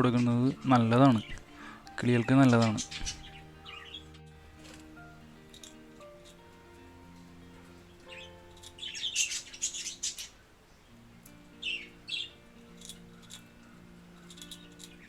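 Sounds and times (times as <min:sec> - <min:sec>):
parrots chirping: 0:00.0 - 0:04.3, 0:07.7 - 0:10.5, 0:11.6 - 0:13.5
soft background music: 0:00.0 - 0:15.0.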